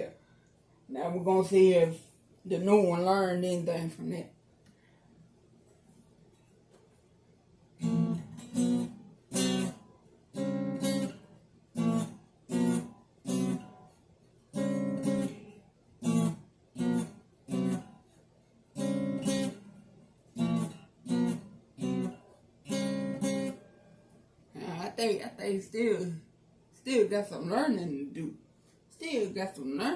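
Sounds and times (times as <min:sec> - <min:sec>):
acoustic guitar strummed chords: 0:07.8 - 0:24.1.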